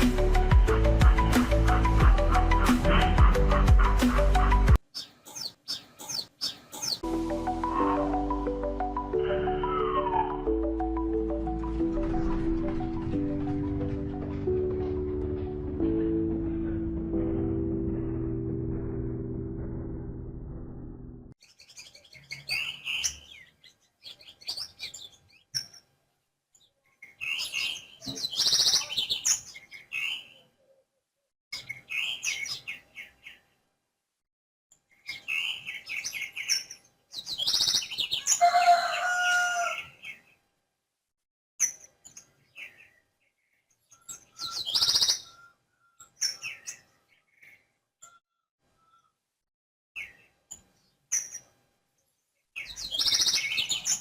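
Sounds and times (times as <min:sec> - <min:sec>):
small birds chirping: 0:04.8 - 0:07.1, 0:21.4 - 0:30.8, 0:31.5 - 0:33.6, 0:34.8 - 0:39.1, 0:41.6 - 0:49.2, 0:50.0 - 0:54.0.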